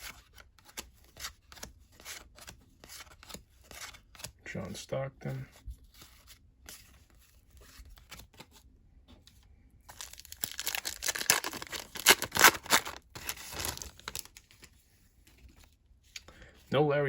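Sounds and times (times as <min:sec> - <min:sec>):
wrapper tearing and crinkling: 0:09.9 - 0:14.4.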